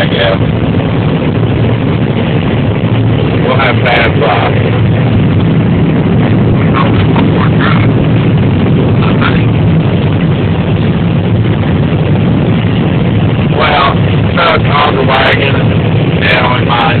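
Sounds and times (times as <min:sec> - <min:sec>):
combine harvester engine drone: 0:00.0 - 0:17.0.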